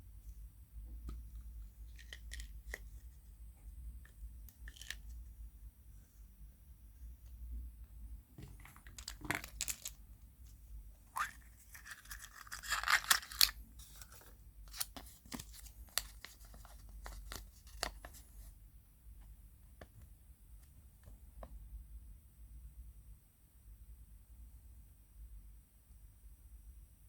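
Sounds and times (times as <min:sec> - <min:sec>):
wrapper tearing and crinkling: 0:08.9 - 0:10.0, 0:11.2 - 0:18.0.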